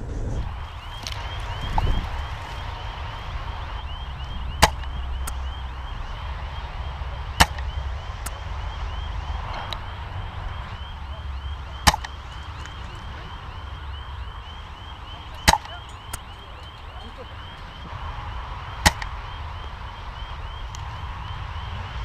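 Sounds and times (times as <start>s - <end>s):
airsoft rifle shots: 4.5s - 6.4s, 7.4s - 8.4s, 9.6s - 17.9s, 18.8s - 19.4s.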